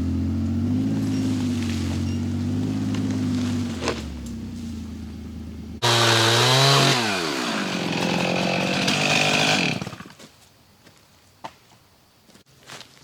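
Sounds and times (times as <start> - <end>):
low engine running: 0.0 - 10.0
chainsaw revving: 0.6 - 4.1, 5.8 - 10.2.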